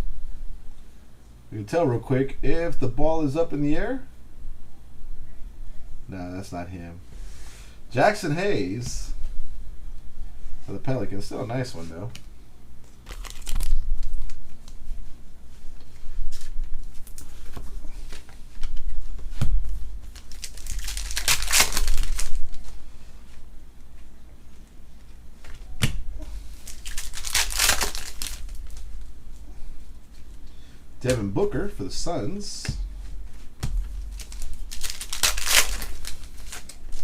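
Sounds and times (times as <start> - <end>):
foil wrappers tearing and crinkling: 13.0 - 14.4, 20.0 - 22.7, 26.5 - 29.1, 33.9 - 37.0
cards being handled: 15.8 - 22.8, 26.6 - 29.0, 32.6 - 37.0.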